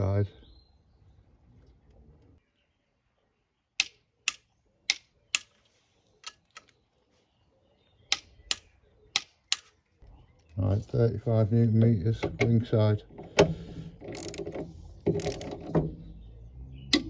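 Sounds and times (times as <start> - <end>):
torque wrench clicking: 13.3 - 15.7.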